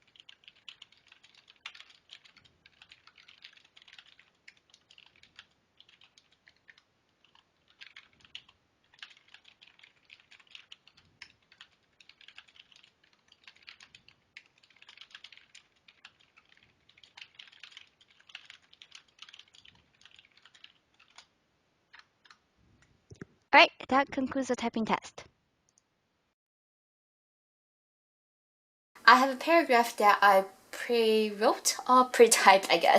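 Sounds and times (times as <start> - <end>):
keyboard typing: 0.0 - 21.3, 21.9 - 22.4.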